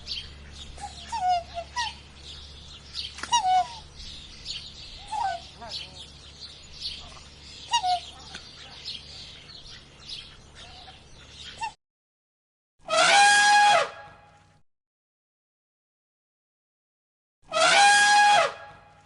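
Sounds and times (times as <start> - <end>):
chickens clucking: 0.1 - 11.8
chicks chirping and peeping: 4.0 - 11.7.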